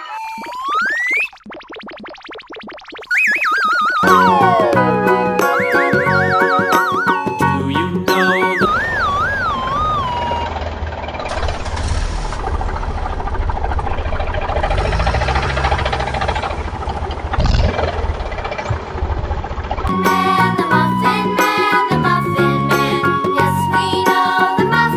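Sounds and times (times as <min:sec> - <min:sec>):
wobbling falling whistle: 0:00.0 - 0:01.4, 0:02.8 - 0:10.7, 0:19.9 - 0:24.9
motor running with rattle: 0:09.8 - 0:19.9.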